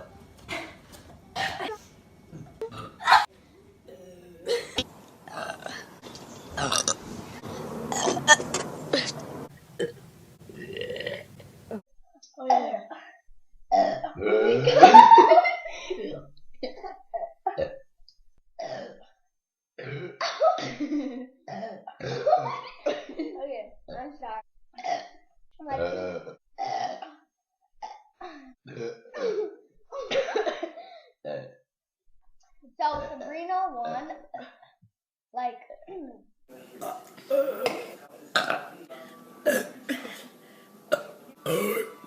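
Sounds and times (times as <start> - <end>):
girl burping: 2.4 - 3.3, 3.9 - 5.9, 6.6 - 7.0, 7.9 - 9.2, 10.6 - 11.3, 13.7 - 15.0, 19.8 - 20.3, 24.8 - 27.1, 36.8 - 38.7, 39.4 - 40.2, 40.9 - 42.0.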